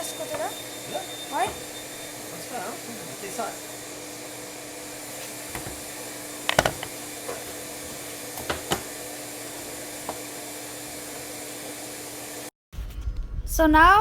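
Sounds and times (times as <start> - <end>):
clamps knocking and clicking: 6.5 - 7.6.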